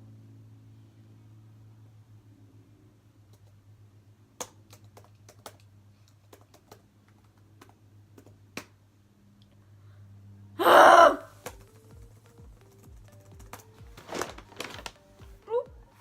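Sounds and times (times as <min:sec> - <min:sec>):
steady low hum: 0:00.0 - 0:14.0
computer keys clicking: 0:03.3 - 0:03.6, 0:04.4 - 0:08.4.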